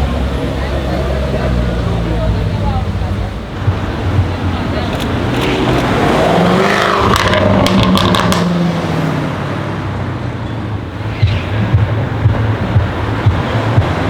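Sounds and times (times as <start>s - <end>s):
car engine accelerating: 0.0s - 14.0s
exhaust crackles and pops: 3.5s - 8.5s, 11.0s - 14.0s.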